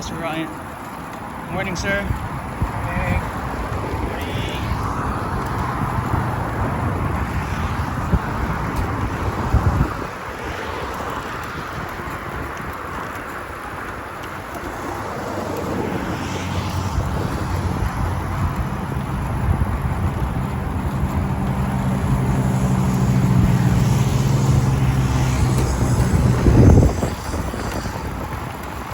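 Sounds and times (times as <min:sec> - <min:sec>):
road and vehicle noise: 0:00.0 - 0:28.9
wind buffeting microphone: 0:00.0 - 0:28.9.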